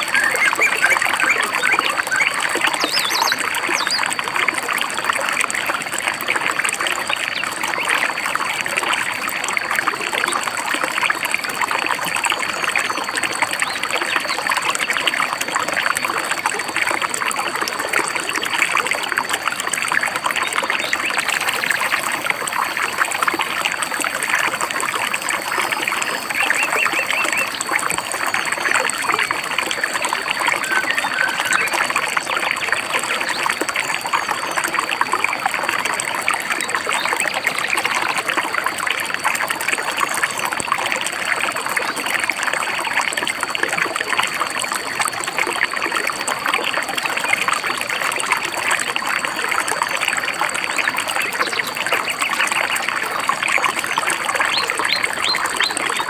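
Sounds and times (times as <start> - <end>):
bird chirps: 0.0 - 4.1, 25.9 - 27.8, 30.3 - 31.8, 54.4 - 56.0
stream babbling over rocks: 0.0 - 56.0.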